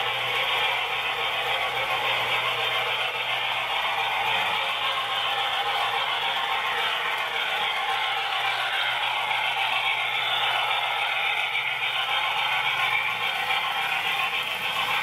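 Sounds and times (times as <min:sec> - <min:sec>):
model train rattling and whirring: 0:00.0 - 0:15.0.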